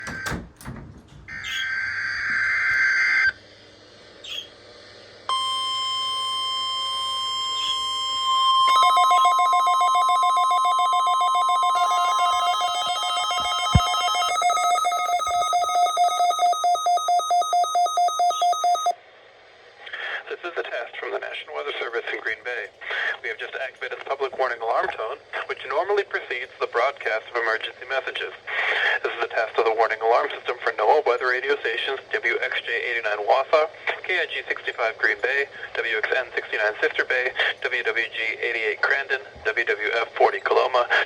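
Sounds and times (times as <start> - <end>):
steady warning alarm tone: 0.0 - 3.3, 5.3 - 19.0
digital data tones: 5.3 - 18.9
electronic alarm beeping: 5.3 - 19.0.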